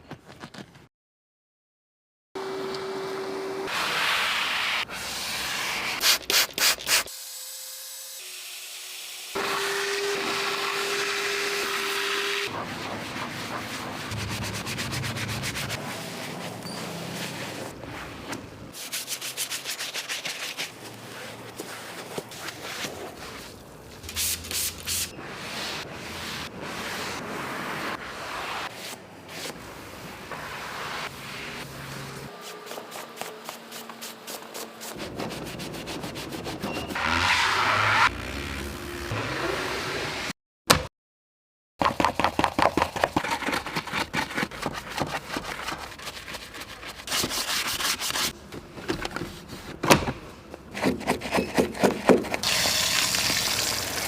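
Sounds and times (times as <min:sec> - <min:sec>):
rhythmic scrubbing strokes: 0:13.4 - 0:16.4.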